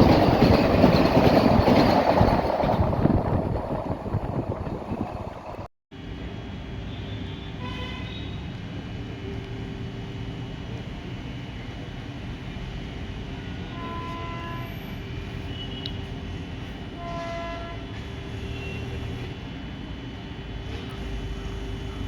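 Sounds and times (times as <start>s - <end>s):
steady rumble: 0.0s - 5.7s
locomotive horn blasts: 7.6s - 8.4s, 13.6s - 15.9s, 17.0s - 19.2s.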